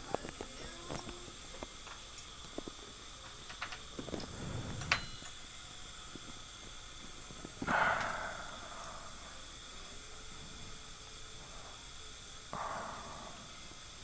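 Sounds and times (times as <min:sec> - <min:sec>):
steady background hiss: 0:00.0 - 0:14.0
metallic clink: 0:03.5 - 0:05.4
burst of hiss: 0:04.0 - 0:05.1, 0:06.0 - 0:14.0.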